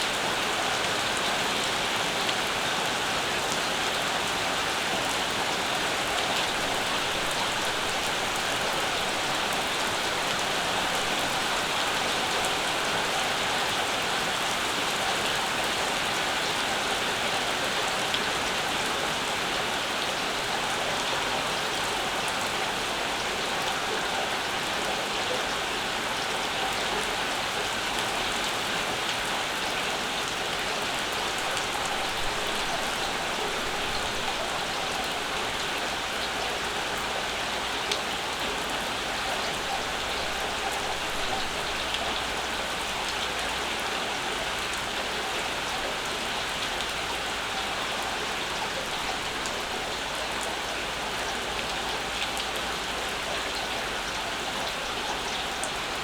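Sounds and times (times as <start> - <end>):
steady rainfall: 0.0 - 56.0.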